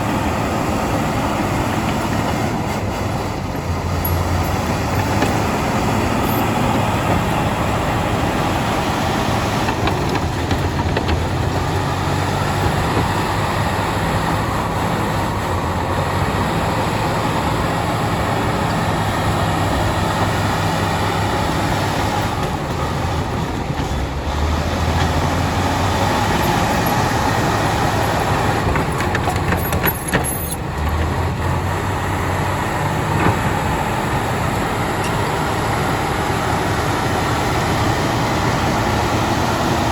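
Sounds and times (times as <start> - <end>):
diesel engine under load: 0.0 - 39.9
steel tracks clanking: 1.4 - 15.1, 22.1 - 32.2.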